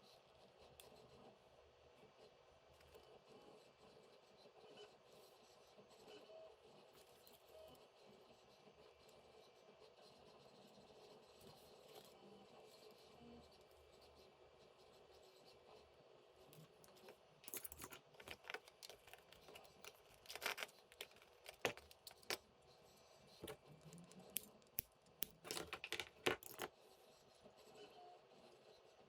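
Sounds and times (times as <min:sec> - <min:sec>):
small hard parts clicking and scraping: 0:16.6 - 0:26.8.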